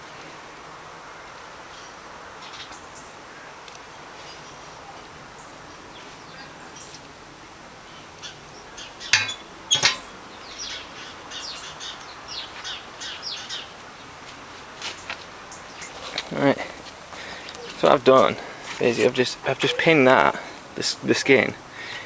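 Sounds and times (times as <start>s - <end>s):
small bird chirping: 7.9s - 14.1s
sharp metallic clinks: 9.1s - 10.9s.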